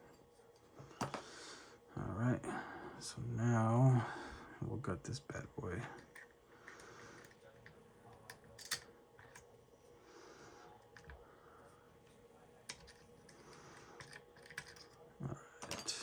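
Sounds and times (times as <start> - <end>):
lockpicking tools clicking: 8.3 - 9.4, 14.0 - 15.0.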